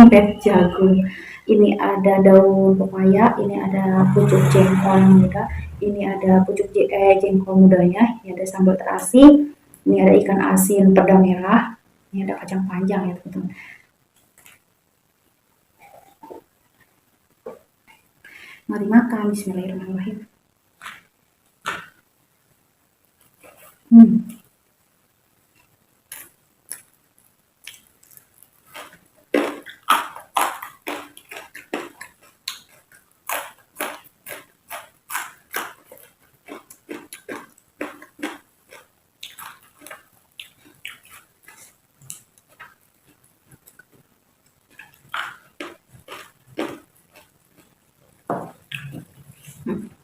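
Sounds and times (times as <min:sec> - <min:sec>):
wet mouth clicks: 0:20.8 - 0:22.0, 0:27.6 - 0:42.8, 0:44.7 - 0:47.7, 0:48.7 - 0:49.9
crunchy chewing of vegetables: 0:25.6 - 0:27.0, 0:27.6 - 0:50.0.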